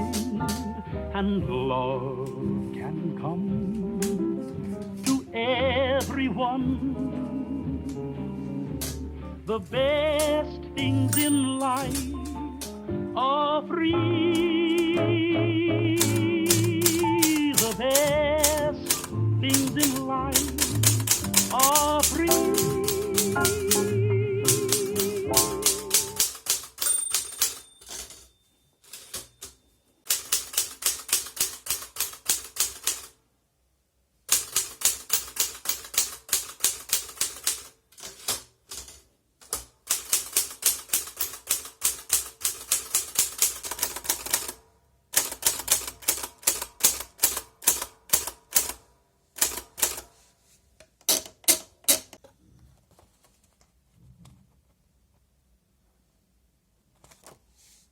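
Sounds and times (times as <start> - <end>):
typewriter keystrokes: 0.0 - 0.7, 11.0 - 12.8, 14.3 - 15.0, 15.9 - 28.2, 28.9 - 33.2, 34.3 - 50.1, 51.0 - 52.2.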